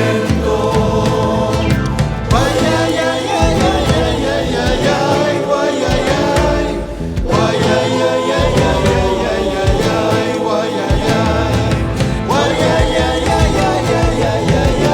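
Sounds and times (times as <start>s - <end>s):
folk ensemble with singing: 0.0s - 14.9s.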